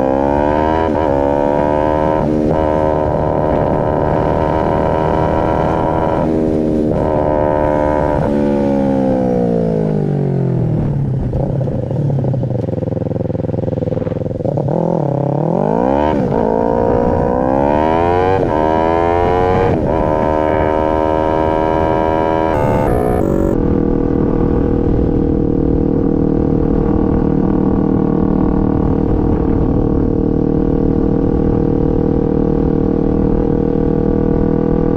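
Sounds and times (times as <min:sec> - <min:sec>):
motorcycle engine revving: 0:00.0 - 0:25.7.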